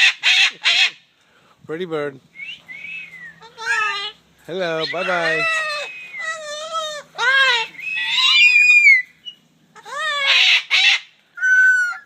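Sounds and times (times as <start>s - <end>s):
parrots squawking: 0.0s - 1.0s, 3.4s - 12.0s.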